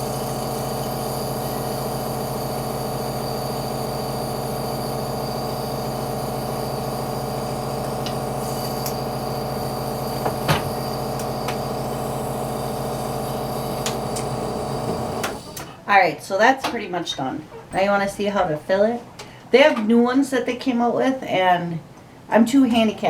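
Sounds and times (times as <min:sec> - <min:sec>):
air compressor humming: 0:00.0 - 0:15.8.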